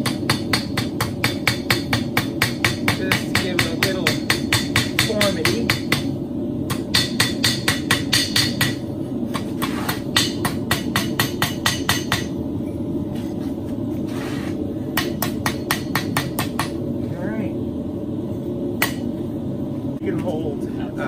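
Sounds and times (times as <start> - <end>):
hammer striking metal on anvil: 0.0 - 6.1, 6.7 - 8.8, 9.4 - 12.4, 15.0 - 16.8, 18.8 - 19.1
steady low rumble: 0.2 - 21.0.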